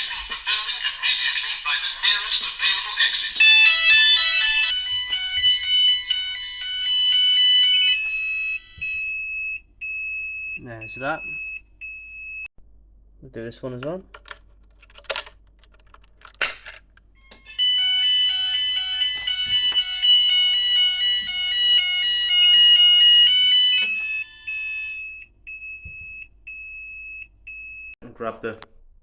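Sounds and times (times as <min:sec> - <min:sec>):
fire alarm tone stepping pitches: 0:03.4 - 0:12.5, 0:17.2 - 0:28.0
high repeating beep: 0:07.8 - 0:12.5, 0:18.5 - 0:28.0.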